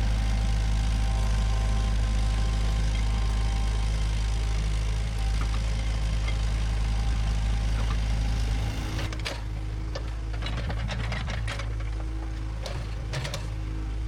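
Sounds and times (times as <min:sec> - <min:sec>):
diesel engine droning: 0:00.0 - 0:14.0
metal clanks and knocks: 0:10.0 - 0:13.5.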